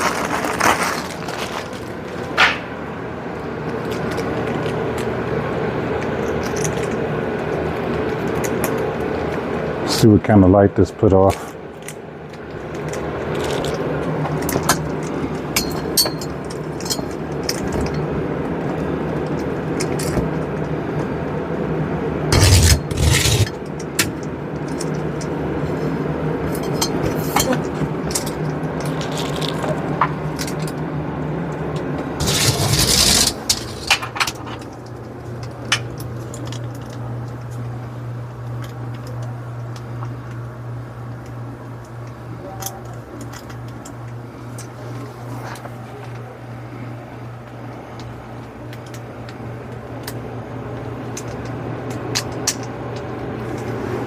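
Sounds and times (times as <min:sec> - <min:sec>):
scraping and rustling: 0:00.0 - 0:02.7, 0:32.2 - 0:34.7
steady low hum: 0:00.0 - 0:54.0.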